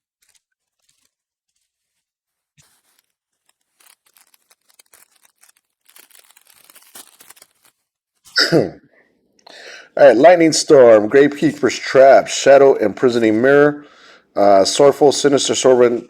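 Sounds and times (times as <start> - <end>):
cards rustling: 0.0 - 8.3
foil wrapper crinkling and tearing: 0.0 - 8.4.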